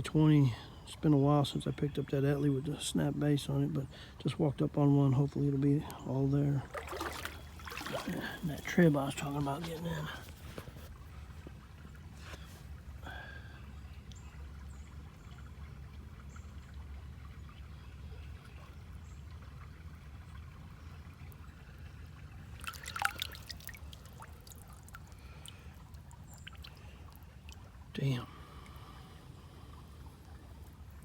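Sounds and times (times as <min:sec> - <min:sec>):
creek water trickling: 0:00.0 - 0:31.0
water splashing: 0:05.9 - 0:11.0, 0:22.3 - 0:31.0.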